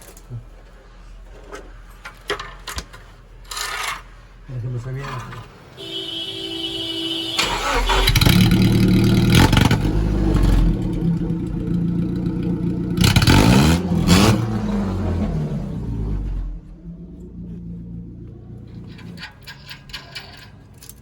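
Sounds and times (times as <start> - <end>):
pickup engine revving: 5.9 - 19.2.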